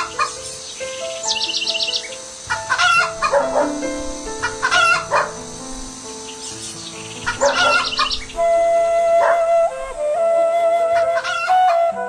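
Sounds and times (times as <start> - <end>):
high bird chirps: 0.0 - 10.2
background music: 0.0 - 12.0
rooster crowing: 7.3 - 10.0.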